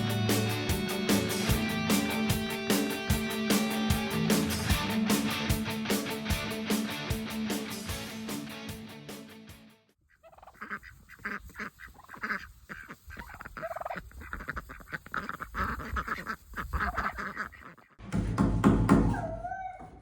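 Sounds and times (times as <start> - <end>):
geese honking: 10.1 - 18.0.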